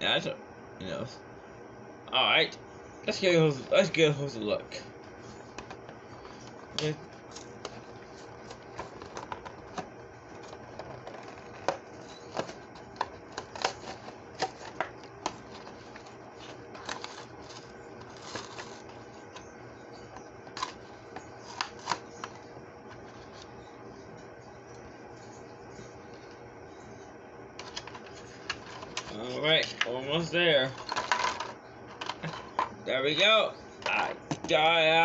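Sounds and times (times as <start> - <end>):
toy packaging clicking and crackling: 5.6 - 19.0, 20.5 - 22.4, 30.8 - 32.6.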